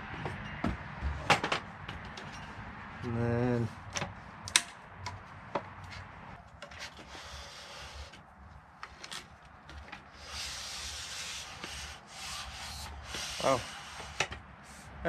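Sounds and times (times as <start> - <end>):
telescoping mast sliding: 6.0 - 14.9.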